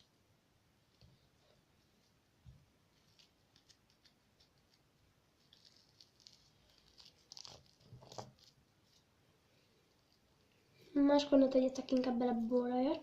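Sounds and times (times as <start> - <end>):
sticky crackling of slime: 2.8 - 9.1.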